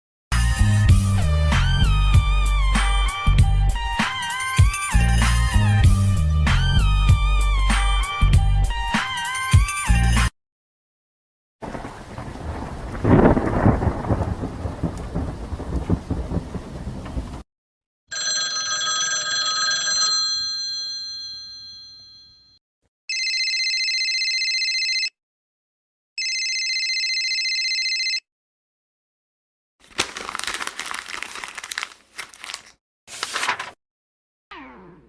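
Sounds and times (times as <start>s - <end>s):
thunderclap: 11.6s - 17.4s
telephone ringing: 18.1s - 25.2s, 26.2s - 28.2s.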